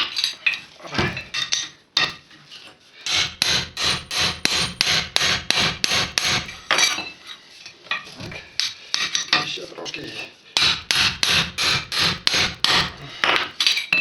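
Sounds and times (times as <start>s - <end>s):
hammer blows on steel: 3.1s - 6.6s.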